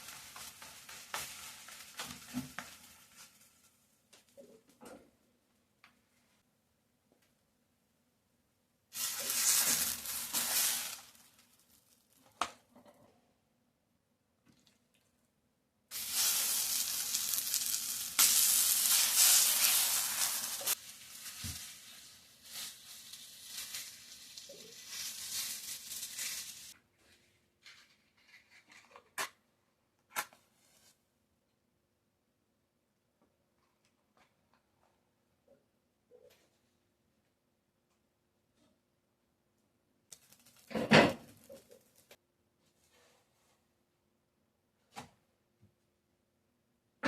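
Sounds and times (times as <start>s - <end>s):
batter sizzling in frying pan: 0.0s - 3.7s, 8.9s - 12.2s, 15.9s - 26.8s.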